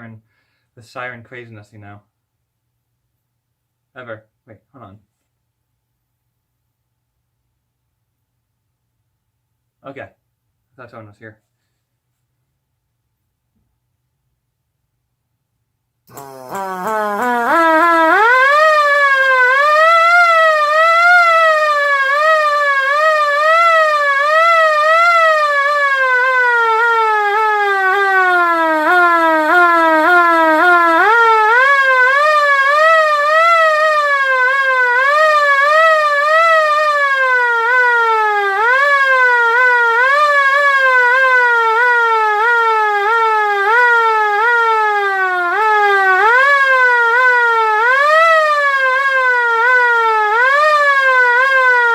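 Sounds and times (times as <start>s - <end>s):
air raid siren warbling: 16.1s - 51.9s.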